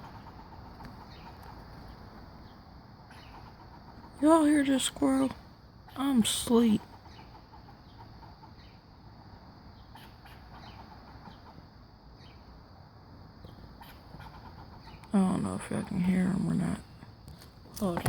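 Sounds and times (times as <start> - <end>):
squirrel chattering: 0.0 - 1.6, 3.1 - 8.8, 13.7 - 16.8.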